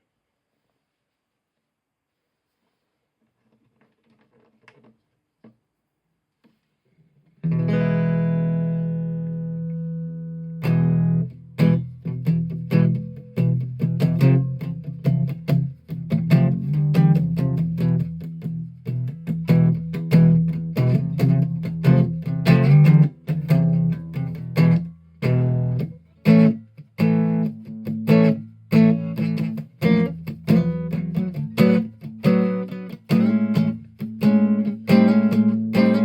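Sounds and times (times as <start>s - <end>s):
plucked string instrument chords: 7.4s - 36.0s.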